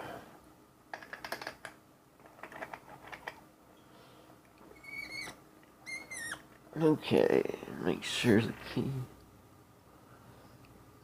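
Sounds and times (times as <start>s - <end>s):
short high-pitched squeaks: 4.7s - 6.4s.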